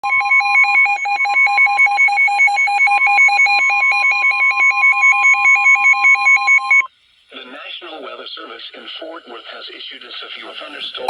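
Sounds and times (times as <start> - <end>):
rapid alarm beeps: 0.0 - 6.9
steady alarm tone: 0.0 - 6.9.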